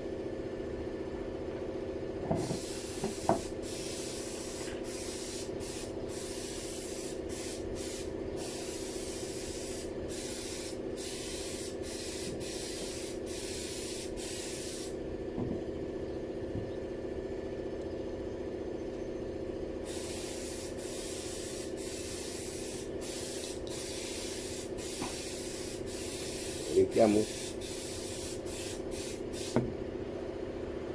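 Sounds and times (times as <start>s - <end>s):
machine hum: 0.0s - 30.9s
hissing spray: 2.4s - 15.0s, 19.9s - 29.6s.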